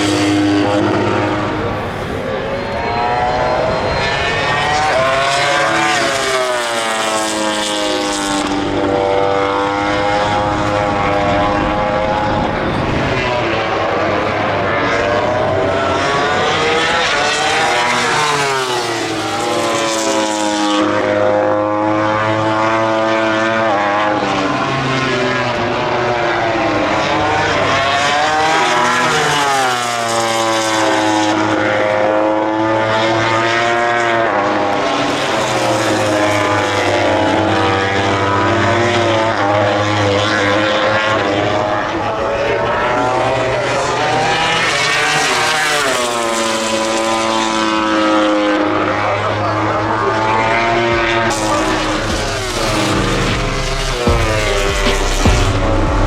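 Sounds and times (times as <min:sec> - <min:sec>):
racing motorcycles passing: 0:00.0 - 0:56.0.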